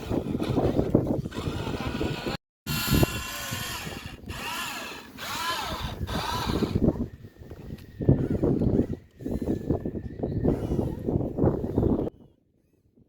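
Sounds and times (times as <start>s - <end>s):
rough grinding noise: 0.0s - 6.9s
toy electric motors whining: 0.0s - 7.0s, 10.4s - 11.8s.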